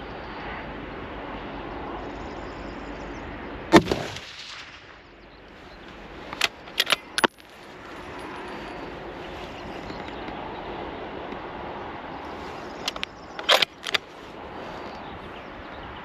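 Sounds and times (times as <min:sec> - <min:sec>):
rifle shot: 0:03.7 - 0:05.0
rifle bolt metallic clicks: 0:06.3 - 0:07.5, 0:12.8 - 0:14.1.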